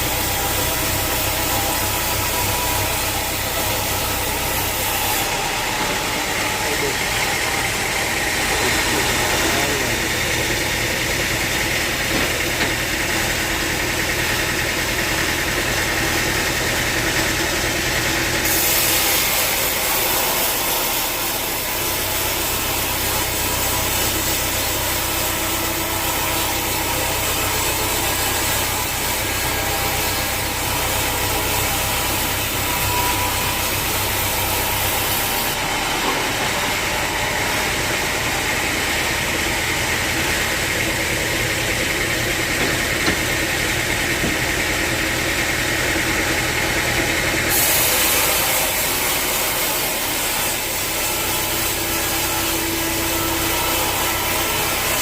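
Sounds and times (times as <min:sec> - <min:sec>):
sawmill engine running: 0:00.0 - 0:55.0
saw blade hissing through log: 0:18.4 - 0:37.6, 0:47.5 - 0:55.0.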